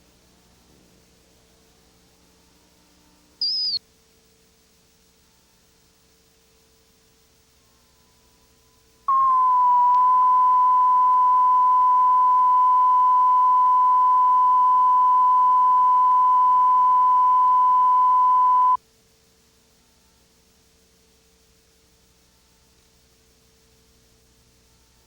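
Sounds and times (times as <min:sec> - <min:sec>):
steady test tone: 0:09.1 - 0:18.8.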